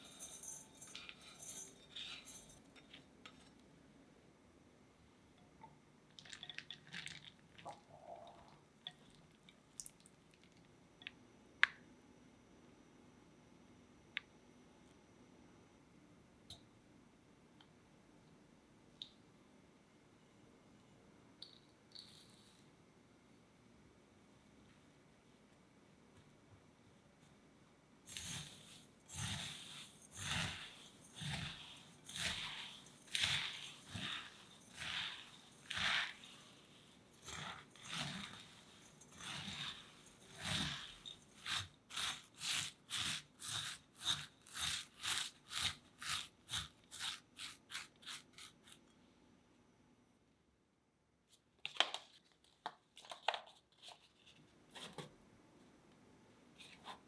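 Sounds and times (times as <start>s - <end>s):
pastry crackling and rustling: 28.2s - 48.8s.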